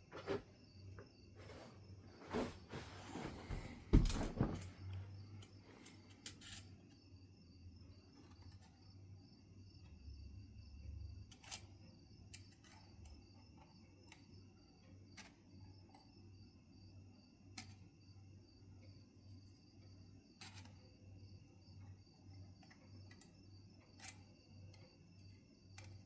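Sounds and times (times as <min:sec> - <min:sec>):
faint steady hum: 0:00.0 - 0:26.0.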